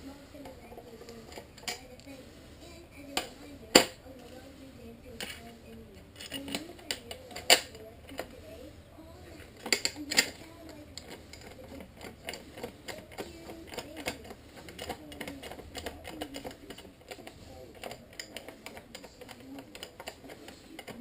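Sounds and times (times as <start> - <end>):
plastic panels clicking and tapping: 6.2 - 8.3, 9.6 - 21.0.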